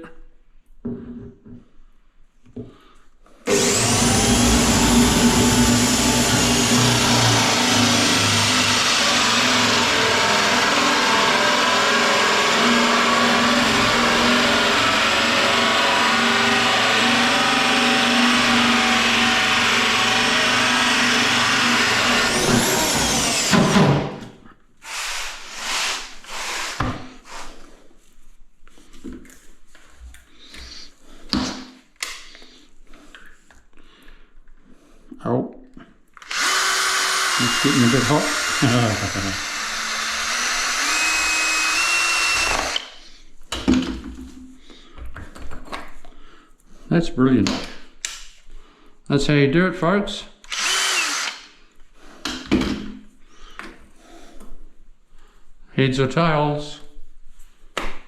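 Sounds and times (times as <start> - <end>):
electric drill whining: 3.5 - 24.0, 36.2 - 43.0, 50.4 - 51.5.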